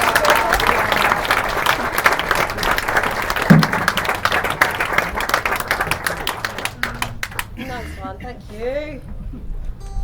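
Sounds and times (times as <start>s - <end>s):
audience applauding: 0.0s - 7.6s.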